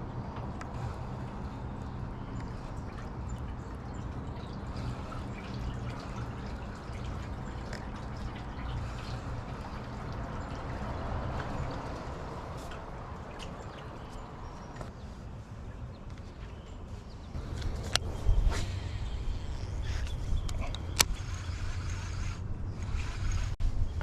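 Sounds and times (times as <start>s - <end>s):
steady low hum: 0.0s - 24.0s
water lapping against boat hull: 0.3s - 15.0s.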